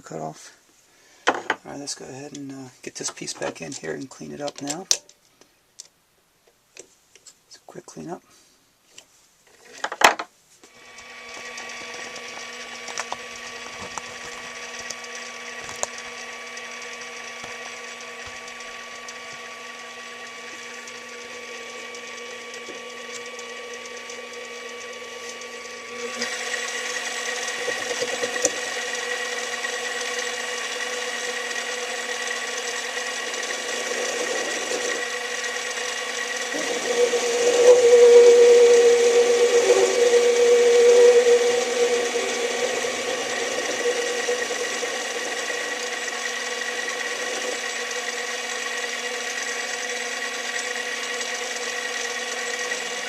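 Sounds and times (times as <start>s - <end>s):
metal lathe motor whine: 10.8s - 53.0s.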